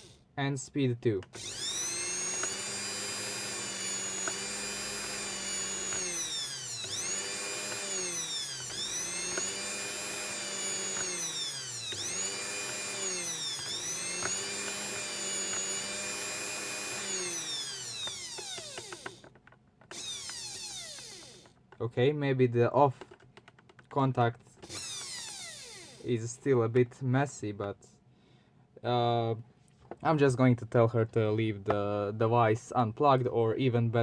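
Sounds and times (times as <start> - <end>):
blender motor whining: 0.0 - 0.3, 1.2 - 21.6, 24.6 - 26.1.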